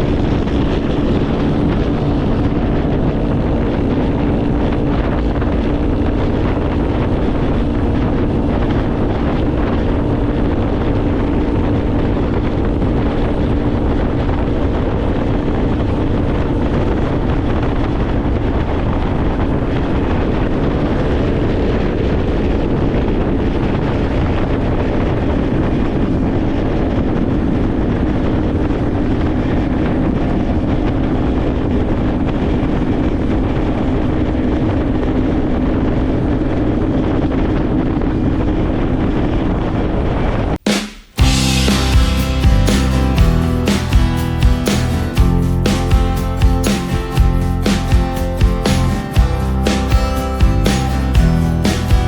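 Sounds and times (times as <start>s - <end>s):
wind noise on microphone: 0.0s - 40.6s, 41.2s - 52.0s
engine running: 41.2s - 52.0s.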